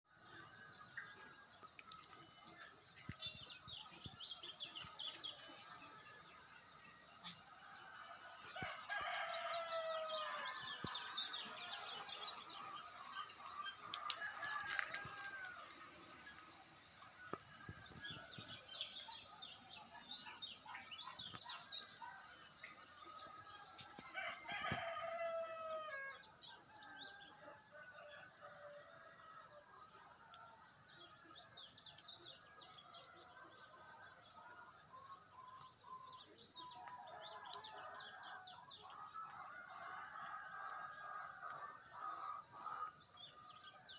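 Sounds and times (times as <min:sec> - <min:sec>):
small birds chirping: 0:00.1 - 0:43.9
rooster crowing: 0:24.2 - 0:26.2.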